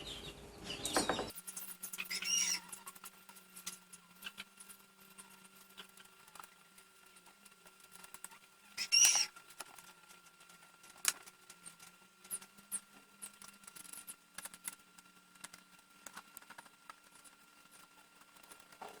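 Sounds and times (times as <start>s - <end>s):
squeaky scrape: 0.8s - 4.4s, 8.8s - 9.4s
small tools clicking and scraping: 1.1s - 19.0s.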